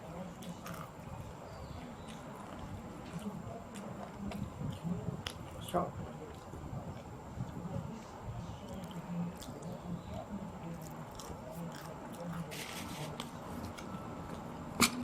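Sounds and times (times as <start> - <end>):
person chewing food: 0.4 - 5.7, 10.7 - 14.5.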